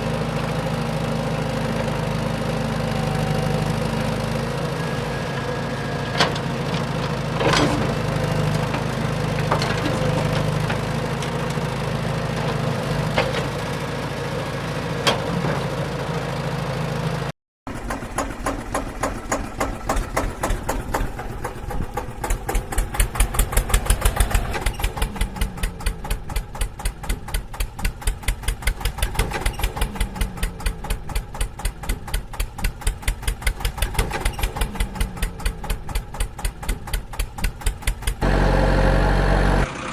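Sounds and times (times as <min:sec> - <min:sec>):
steady engine drone: 0:00.0 - 0:39.9
engine chugging at idle: 0:15.8 - 0:39.9.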